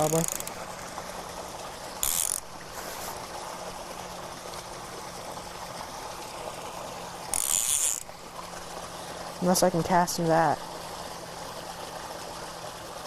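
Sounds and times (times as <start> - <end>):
fishing reel drag buzzing: 0.0 - 0.6, 2.0 - 3.2, 7.2 - 8.2.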